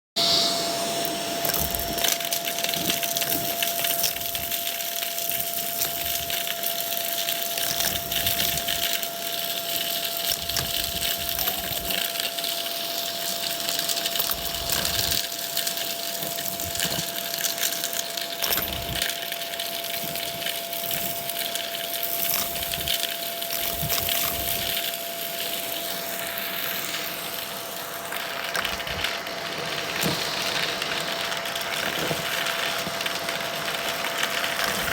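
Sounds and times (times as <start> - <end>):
vacuum cleaner whining: 0.2 - 33.6, 34.4 - 34.9
debris rattling up nozzle: 1.4 - 26.4.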